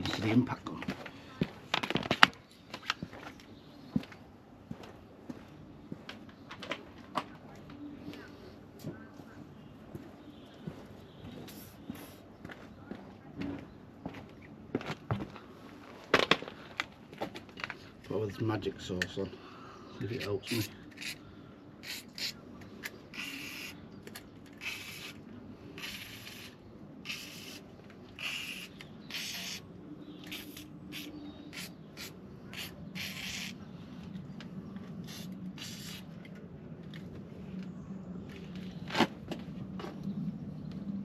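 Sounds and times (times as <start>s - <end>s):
aerosol spray hissing: 23.2s - 23.8s, 25.8s - 27.6s, 28.2s - 29.6s, 30.3s - 33.6s.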